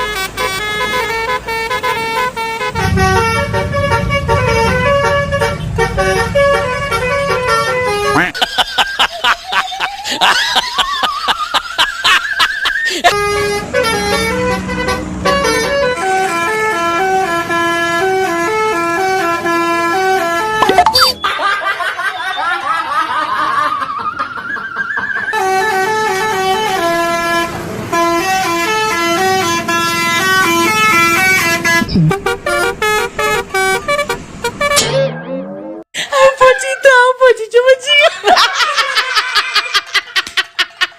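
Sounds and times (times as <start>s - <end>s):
bus horn playing a melody: 0.0s - 8.4s, 13.1s - 21.1s, 25.3s - 35.2s.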